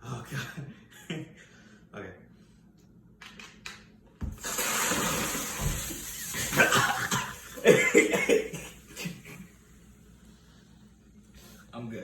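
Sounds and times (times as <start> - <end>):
soda bottle erupting: 4.3 - 7.6
fizzing soda spray: 4.3 - 9.0
person coughing: 6.5 - 9.2.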